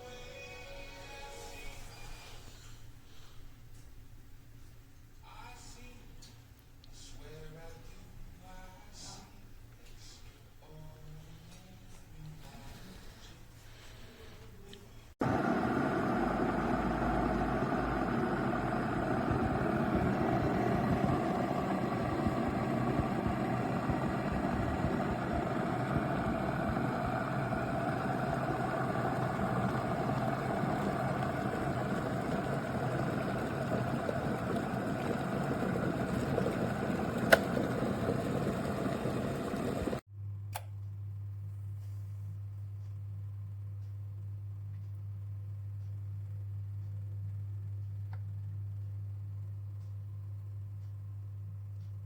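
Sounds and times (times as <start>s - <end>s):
low hum: 14.7s - 41.5s
electric kettle boiling water: 15.2s - 40.0s
kettle switch click: 37.2s - 37.7s.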